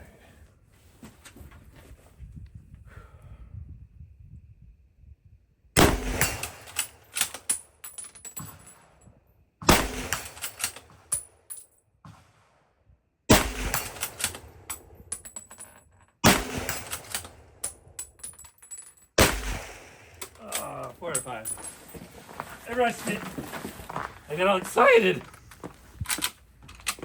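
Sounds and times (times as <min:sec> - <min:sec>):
rifle shots: 0:05.8 - 0:07.0, 0:09.7 - 0:11.1, 0:13.3 - 0:14.7, 0:16.2 - 0:17.6, 0:19.2 - 0:20.4.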